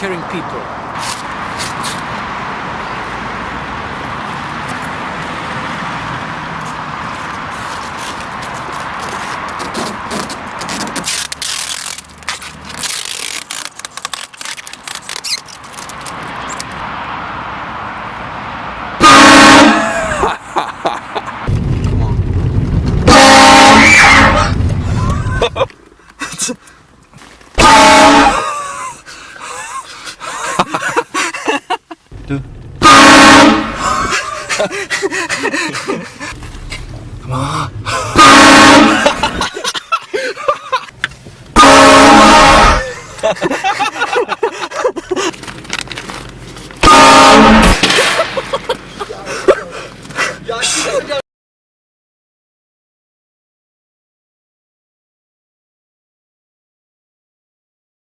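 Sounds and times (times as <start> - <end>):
train horn blast: 19.0 - 20.0, 23.1 - 24.4, 27.6 - 28.4, 32.8 - 34.2, 38.2 - 39.2, 41.6 - 43.0, 46.8 - 47.8
faint low engine hum: 32.1 - 32.8
traffic rushing hiss: 32.1 - 39.7.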